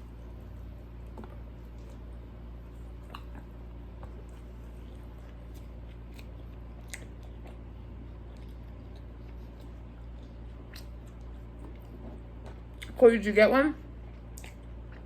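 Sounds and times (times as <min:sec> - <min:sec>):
person chewing food: 0:00.0 - 0:13.0, 0:14.0 - 0:15.0
steady low hum: 0:00.0 - 0:15.0
wet mouth clicks: 0:03.0 - 0:04.1.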